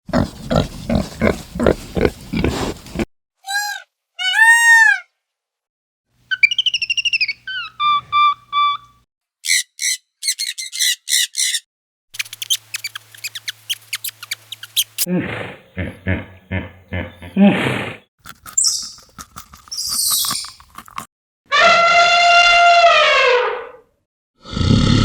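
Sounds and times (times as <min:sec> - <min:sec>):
animal grunts: 0:00.1 - 0:03.1
warbling call: 0:06.3 - 0:08.8, 0:12.2 - 0:15.1
whistled calls: 0:06.3 - 0:11.6, 0:12.2 - 0:15.1
harsh chirps: 0:06.3 - 0:15.1.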